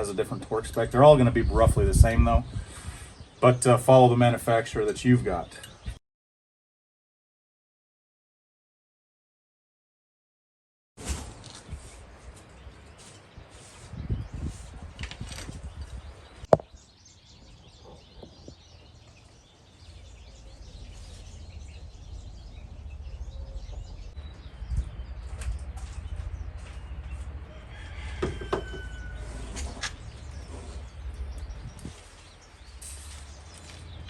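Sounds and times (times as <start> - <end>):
low steady rumble: 20.1 - 27.7.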